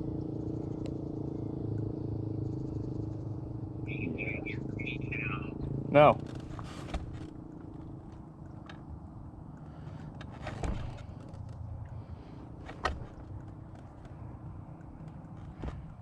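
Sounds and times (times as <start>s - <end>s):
off-road vehicle engine running: 0.0s - 16.0s
sharp knocks and rattles: 9.8s - 11.7s, 12.6s - 14.3s.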